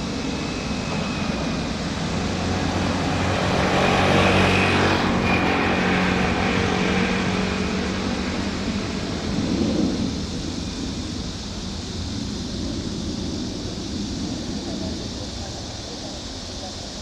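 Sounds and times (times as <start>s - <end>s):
high engine whine: 0.0s - 17.0s
jet engines roaring past: 0.0s - 17.0s.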